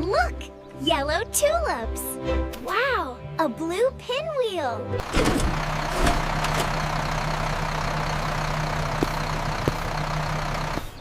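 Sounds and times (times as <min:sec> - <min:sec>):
bus engine idling: 0:05.0 - 0:11.0.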